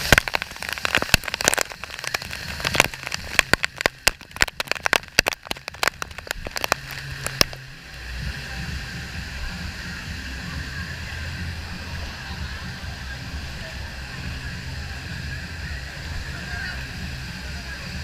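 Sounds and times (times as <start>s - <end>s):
sharp irregular crackles: 0.0s - 8.1s
water splashing: 0.0s - 18.0s.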